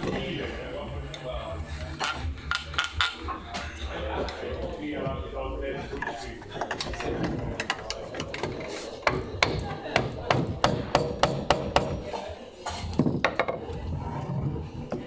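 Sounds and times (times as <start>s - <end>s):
hammering blows: 7.7s - 12.2s.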